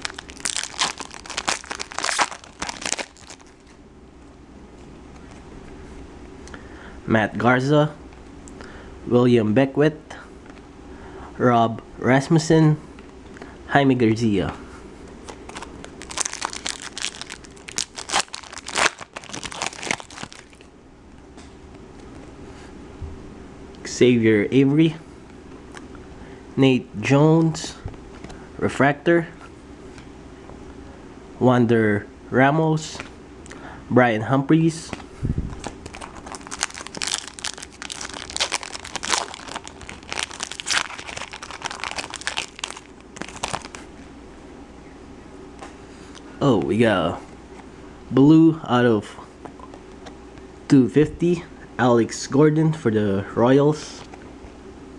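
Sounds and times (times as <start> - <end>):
wrapper crinkling and tearing: 0.0 - 3.8, 15.2 - 20.7, 35.6 - 43.9.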